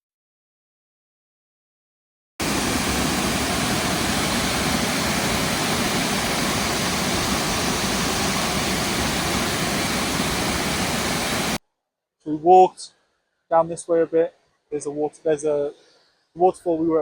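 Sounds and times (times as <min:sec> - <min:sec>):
waterfall rushing: 0:02.4 - 0:11.6.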